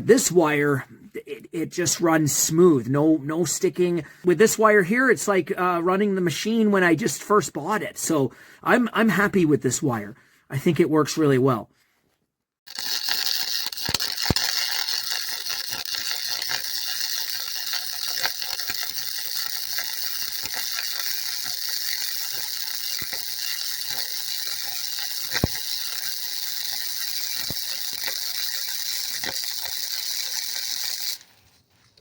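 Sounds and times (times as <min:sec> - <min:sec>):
welding arc crackling and hissing: 0:12.7 - 0:32.0.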